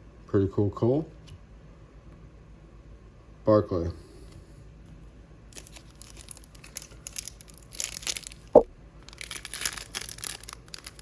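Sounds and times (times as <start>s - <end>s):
wrapper tearing and crinkling: 5.5s - 11.0s.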